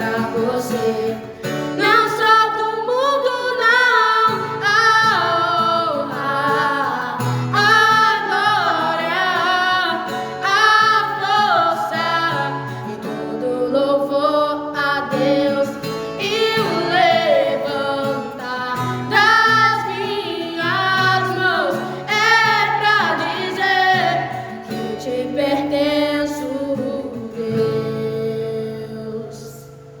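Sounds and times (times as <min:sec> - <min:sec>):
acoustic guitar strumming: 0:00.0 - 0:30.0
person singing worship song: 0:00.0 - 0:30.0.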